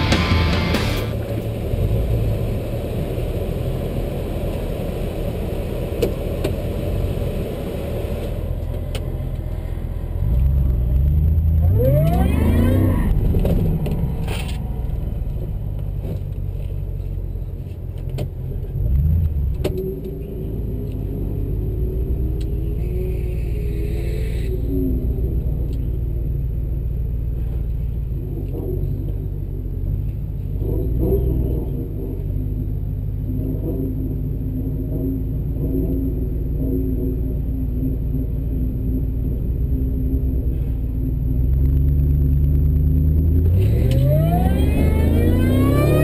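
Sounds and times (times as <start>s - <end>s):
engine revving: 0.0s - 16.7s, 27.4s - 46.0s
vehicle engine rumbling: 0.0s - 46.0s.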